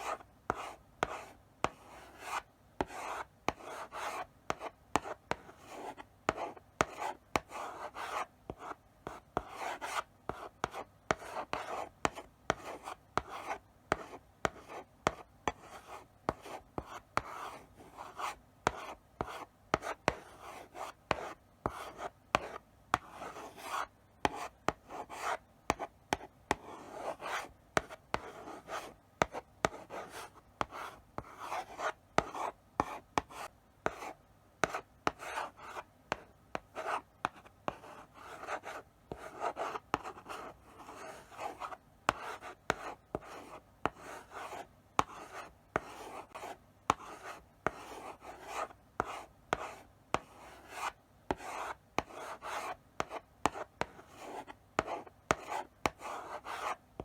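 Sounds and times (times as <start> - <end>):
chalk writing on blackboard: 0.0 - 56.8.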